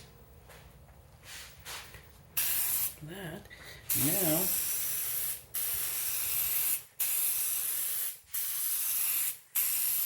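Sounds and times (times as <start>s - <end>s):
aerosol can spraying: 2.4s - 3.0s, 3.9s - 10.0s.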